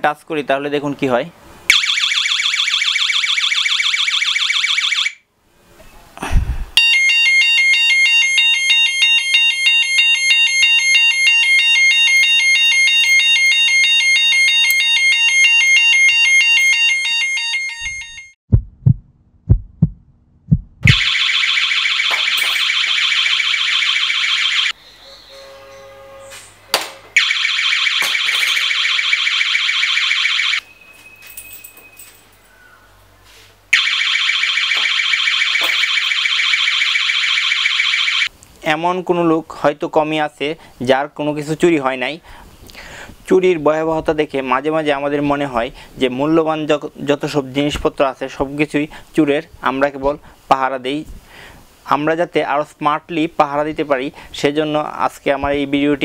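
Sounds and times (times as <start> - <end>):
warbling electronic alarm: 1.7 - 5.2, 6.8 - 18.4, 20.9 - 25.7, 27.2 - 30.7, 33.8 - 38.3.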